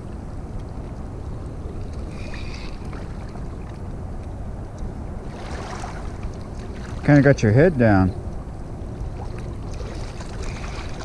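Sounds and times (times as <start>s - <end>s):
wind rumble: 0.0s - 11.0s
river water flowing: 1.6s - 11.0s.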